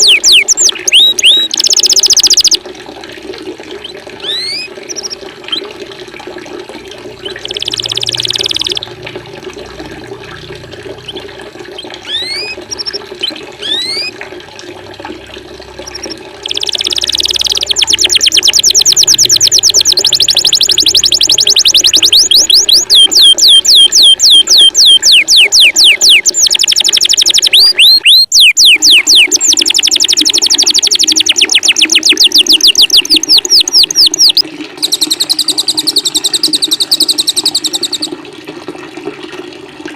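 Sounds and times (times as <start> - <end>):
bird whistled notes: 0.0 - 2.6, 4.2 - 5.2, 7.3 - 8.8, 13.6 - 14.1, 15.9 - 38.1
songbird buzzy calls: 0.0 - 2.6, 4.2 - 5.6, 7.2 - 8.9, 11.8 - 14.1, 15.8 - 38.1
running water: 0.0 - 39.9.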